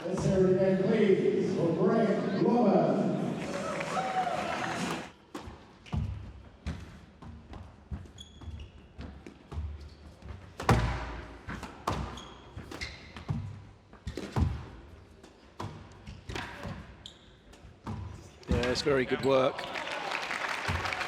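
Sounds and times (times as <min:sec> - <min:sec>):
shoes squeaking on court: 0:04.6 - 0:19.7
squash ball knocks: 0:10.6 - 0:12.2.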